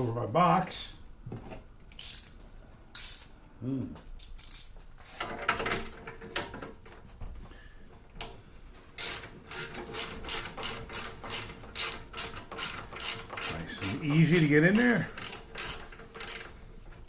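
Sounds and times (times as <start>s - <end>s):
metallic clicks of tool turning: 1.9s - 3.3s, 4.2s - 4.8s.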